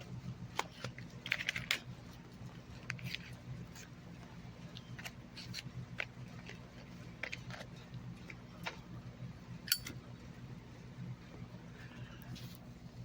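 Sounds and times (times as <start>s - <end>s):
metallic lighter clink: 9.7s - 9.9s.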